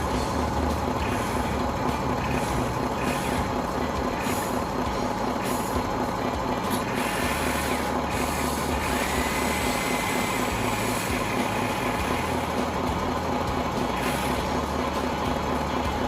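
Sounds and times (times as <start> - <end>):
mechanical rattling: 0.0 - 16.0
small electric motors whirring: 2.2 - 5.9, 6.6 - 13.0, 13.8 - 14.6.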